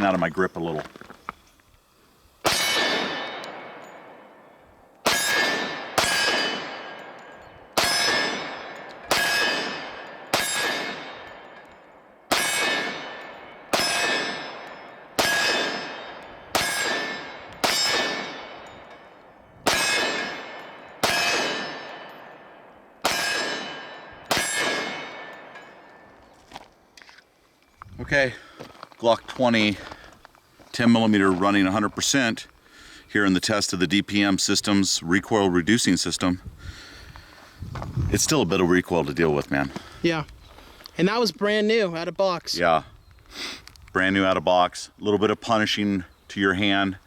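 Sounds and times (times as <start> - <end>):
pistol shots: 2.4 - 4.4, 5.0 - 26.1
steel target clanging: 2.4 - 26.4.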